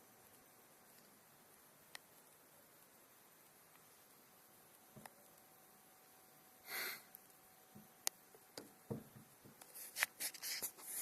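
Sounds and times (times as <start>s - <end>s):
breathy sniff: 6.6s - 7.1s
handling knocks: 8.6s - 9.6s.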